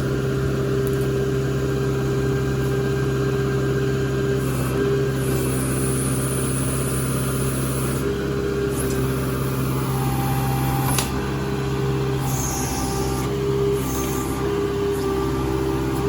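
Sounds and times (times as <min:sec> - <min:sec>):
digging machine engine running: 0:00.0 - 0:16.0.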